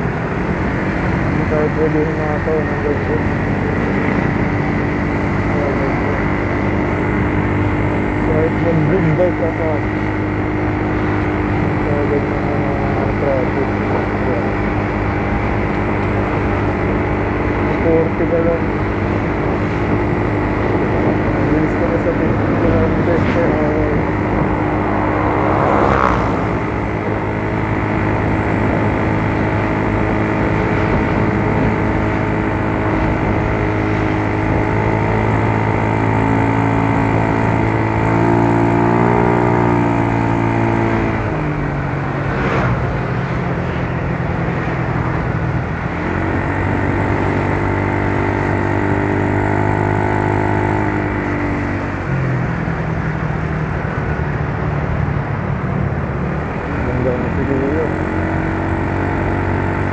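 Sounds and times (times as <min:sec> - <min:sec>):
scooter engine running: 0:00.0 - 0:59.9
wind rushing over microphone: 0:18.6 - 0:38.2, 0:39.1 - 0:46.4.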